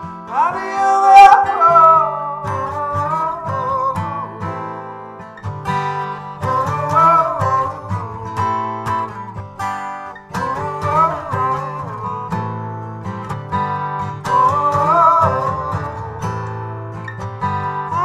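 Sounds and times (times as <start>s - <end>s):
strummed acoustic guitar: 0.0s - 18.0s.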